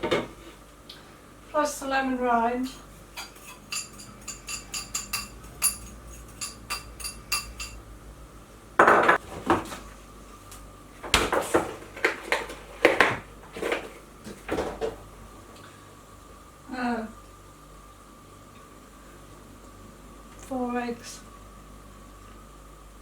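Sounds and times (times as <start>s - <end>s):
metal utensil clinking on bowl: 2.7s - 7.8s.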